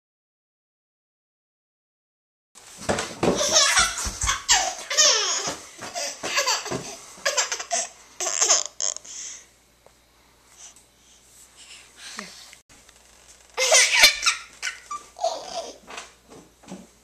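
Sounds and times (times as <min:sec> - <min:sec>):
young child giggling: 0:13.6 - 0:15.8.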